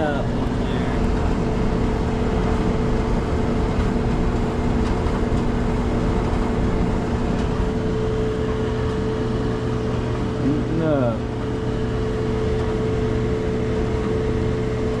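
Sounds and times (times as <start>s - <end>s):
dryer humming and rumbling: 0.0s - 15.0s.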